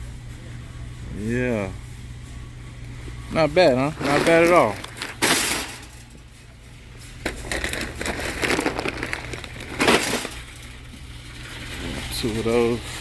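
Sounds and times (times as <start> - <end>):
bag crinkling and rustling: 3.9 - 6.2, 7.1 - 12.2.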